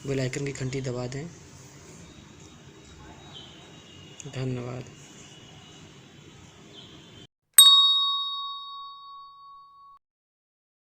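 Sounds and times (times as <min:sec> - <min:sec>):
bright bell ding: 0:07.6 - 0:10.0.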